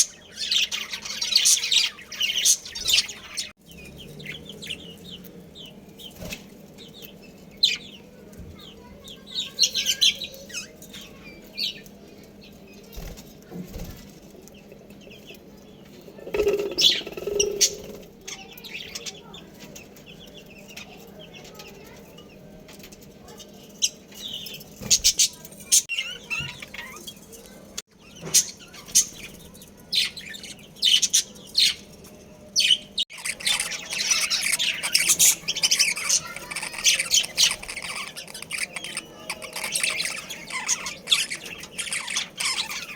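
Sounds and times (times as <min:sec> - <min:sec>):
wing flutters: 0:16.2 - 0:18.2
budgerigars chirping: 0:16.3 - 0:18.0, 0:32.6 - 0:42.9.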